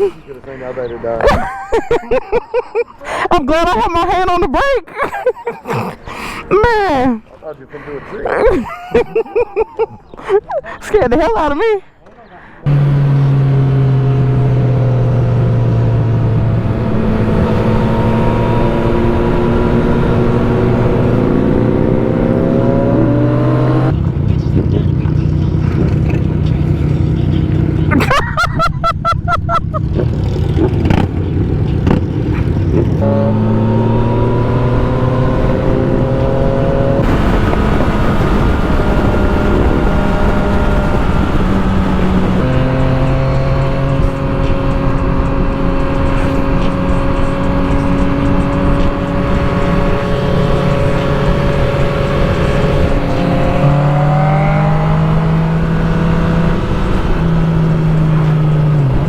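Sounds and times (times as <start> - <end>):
motorcycle engine running: 12.7 - 28.0, 29.0 - 59.0
wind rush on microphone: 34.6 - 54.1.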